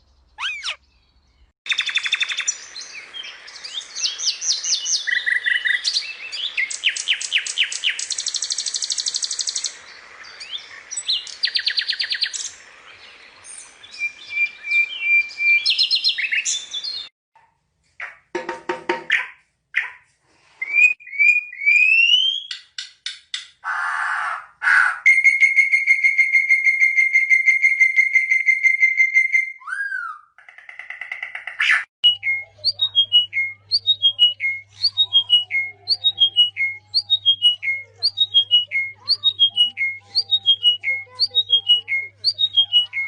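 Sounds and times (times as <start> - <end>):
short falling chirp: 0.4 - 0.8
whistles and bird-like calls: 0.4 - 0.9, 1.7 - 9.8, 13.4 - 17.1, 20.6 - 22.7, 23.6 - 30.4, 31.6 - 43.0.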